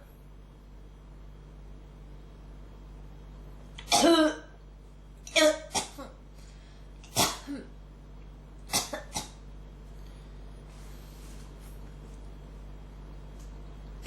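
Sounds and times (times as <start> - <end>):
person coughing: 3.8 - 4.6, 5.3 - 6.2, 7.1 - 7.8, 8.7 - 9.4.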